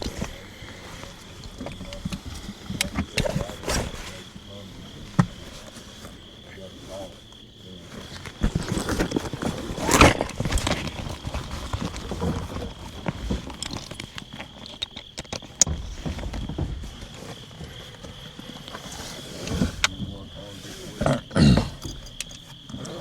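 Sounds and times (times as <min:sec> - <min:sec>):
footsteps: 0:00.0 - 0:21.1
gear knocking and rustling: 0:00.0 - 0:23.0.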